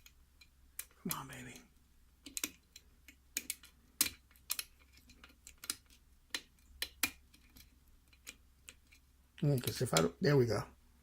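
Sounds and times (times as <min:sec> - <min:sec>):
lock pick clicking against pins: 0:02.2 - 0:10.1.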